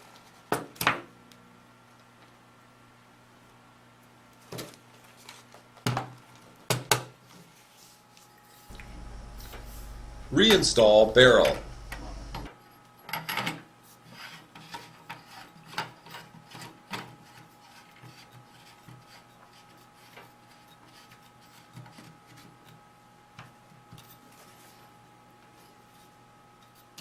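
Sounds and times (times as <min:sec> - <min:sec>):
clicks: 0:08.7 - 0:12.5.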